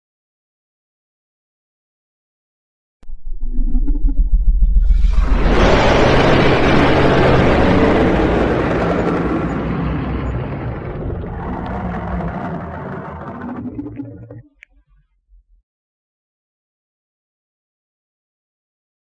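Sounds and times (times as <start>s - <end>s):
dragon roar: 5.0s - 14.2s.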